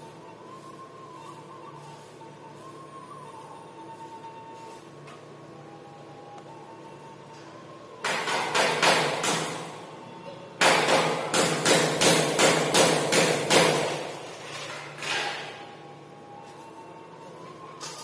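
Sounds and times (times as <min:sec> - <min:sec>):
hammer strikes ringing: 0:08.0 - 0:09.8, 0:10.6 - 0:14.2.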